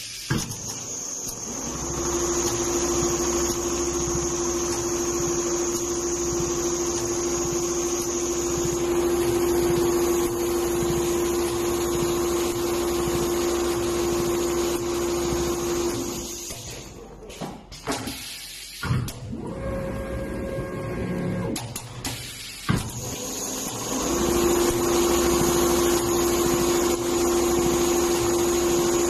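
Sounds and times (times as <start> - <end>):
sewing machine stitching: 0.6 - 16.6, 23.0 - 29.0
high whine: 1.2 - 16.4.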